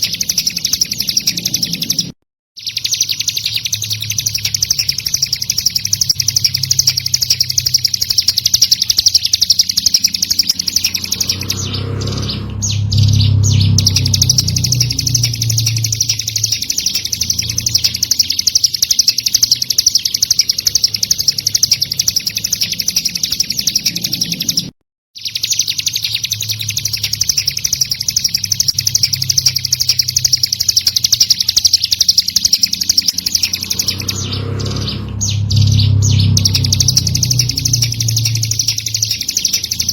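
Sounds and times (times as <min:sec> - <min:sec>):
bird trilling song: 0:00.0 - 0:39.9
low rumble: 0:09.8 - 0:18.0, 0:32.4 - 0:39.9.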